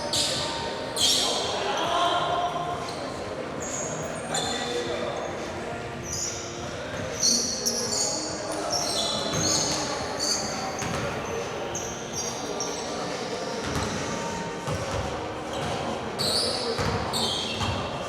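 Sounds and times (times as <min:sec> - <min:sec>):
voices echoing in hall: 0:00.0 - 0:18.0
sneakers squeaking on floor: 0:00.1 - 0:01.9, 0:02.9 - 0:04.9, 0:06.0 - 0:18.0
basketball bouncing: 0:10.8 - 0:11.0, 0:16.8 - 0:17.0.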